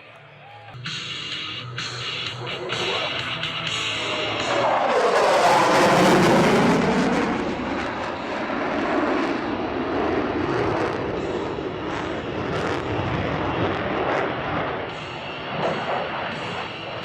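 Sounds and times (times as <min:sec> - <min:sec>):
fighter jet roaring: 0:01.9 - 0:17.0.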